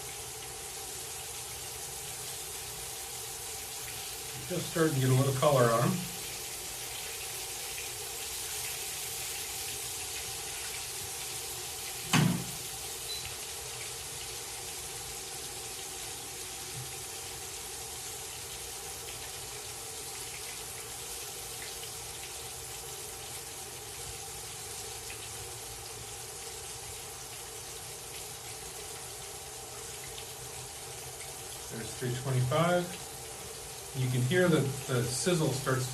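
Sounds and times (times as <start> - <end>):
fish frying in oil: 0.0 - 35.9
sharp knock: 12.1 - 12.6.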